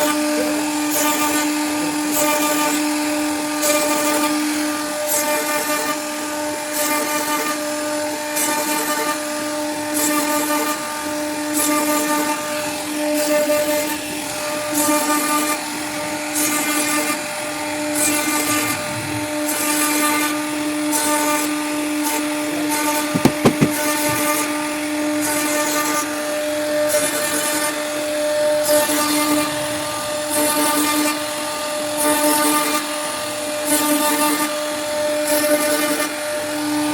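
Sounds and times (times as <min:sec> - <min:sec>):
router spindle whine: 0:00.0 - 0:05.1
knocks: 0:23.1 - 0:24.3.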